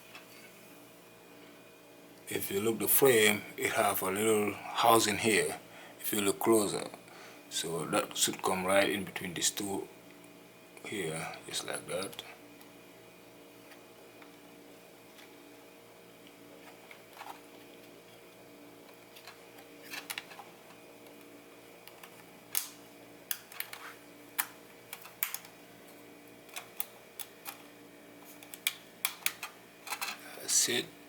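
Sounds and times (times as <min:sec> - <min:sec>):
faint steady hum: 0:00.0 - 0:31.0
plastic parts clicking and tapping: 0:23.3 - 0:25.6, 0:28.4 - 0:30.2.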